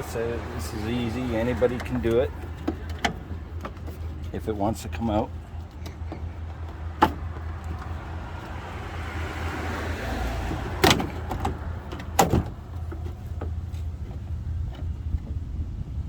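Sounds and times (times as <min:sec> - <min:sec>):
low background rumble: 0:00.0 - 0:16.0
sharp clicks and knocks: 0:01.4 - 0:08.6, 0:10.4 - 0:15.4.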